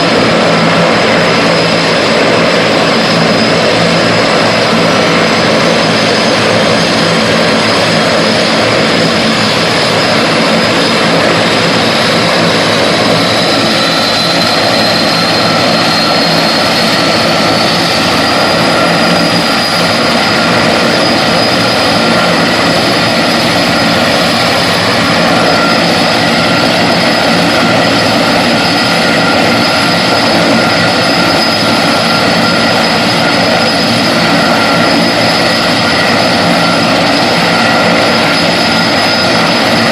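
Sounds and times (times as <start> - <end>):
helicopter engines and rotor: 0.0 - 39.9
high turbine whine: 0.0 - 39.9.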